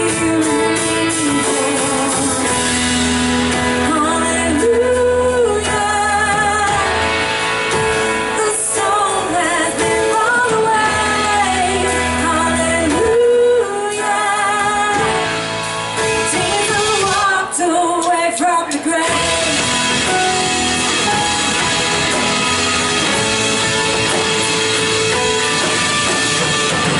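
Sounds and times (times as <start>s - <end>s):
person singing: 0.0s - 2.8s, 3.7s - 7.3s, 8.2s - 15.3s, 16.2s - 22.3s
worship band playing: 0.0s - 26.9s
low bass: 19.1s - 26.9s.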